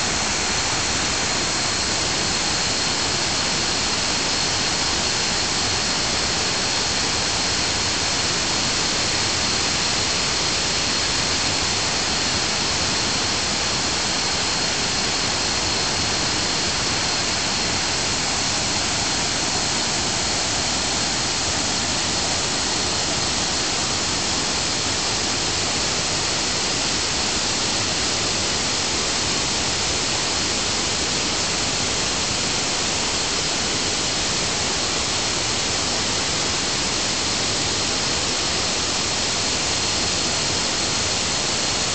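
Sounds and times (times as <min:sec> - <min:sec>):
waterfall rushing: 0:15.0 - 0:27.2.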